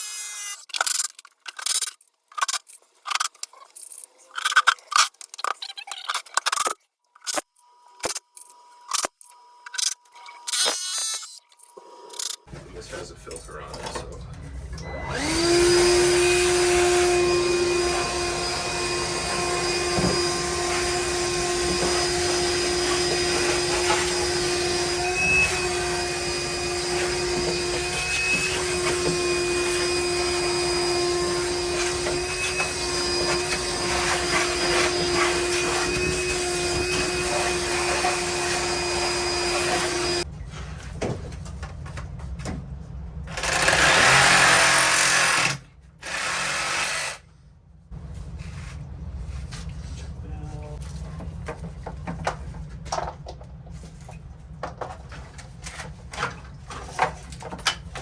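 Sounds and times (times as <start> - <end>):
shop vacuum motor whine: 14.8 - 40.3.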